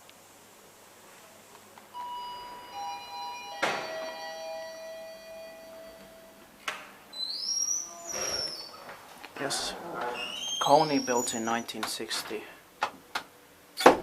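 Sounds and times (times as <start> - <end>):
steady ringing tones: 2.0 - 6.6.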